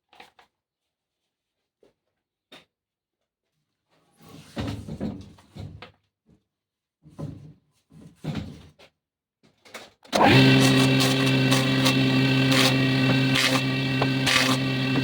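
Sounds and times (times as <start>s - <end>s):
woodworking machine humming: 10.2s - 15.0s.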